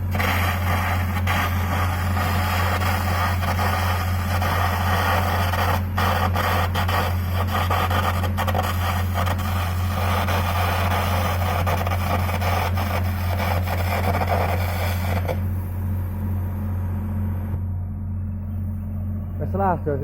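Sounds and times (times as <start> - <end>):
welding arc crackling: 0.0 - 15.5
low engine hum: 0.0 - 20.0.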